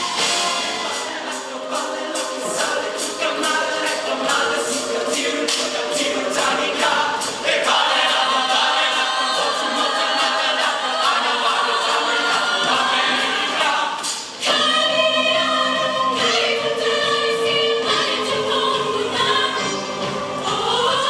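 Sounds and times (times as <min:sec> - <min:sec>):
choir singing: 0:00.0 - 0:21.0.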